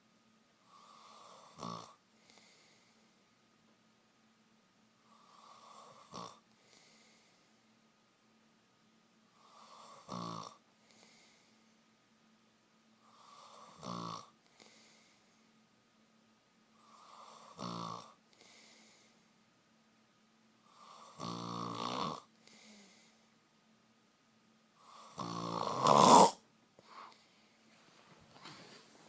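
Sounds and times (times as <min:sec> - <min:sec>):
man snoring: 0:00.7 - 0:02.5, 0:05.1 - 0:07.0, 0:09.4 - 0:11.2, 0:13.1 - 0:14.8, 0:16.8 - 0:18.2, 0:20.7 - 0:22.9, 0:24.8 - 0:26.4
soft breath out: 0:22.4 - 0:23.3.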